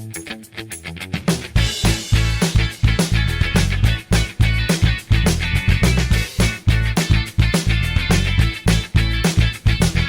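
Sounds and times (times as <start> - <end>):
funk-rock music with guitar: 0.0 - 10.0.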